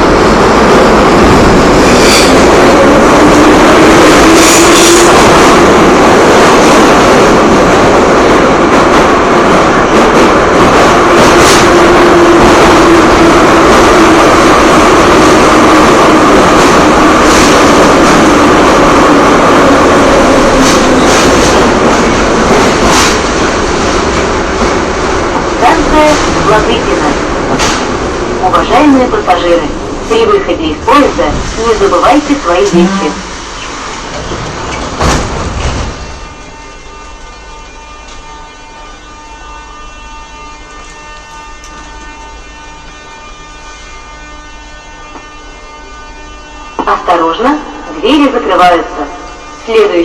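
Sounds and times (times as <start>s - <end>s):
wheels clacking on rails: 0.0s - 28.6s, 30.8s - 38.4s
train rumbling in tunnel: 0.0s - 50.0s.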